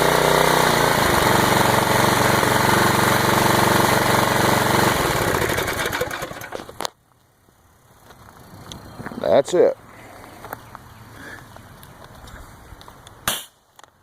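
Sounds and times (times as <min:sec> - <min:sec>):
pressure washer engine running: 0:00.0 - 0:06.7.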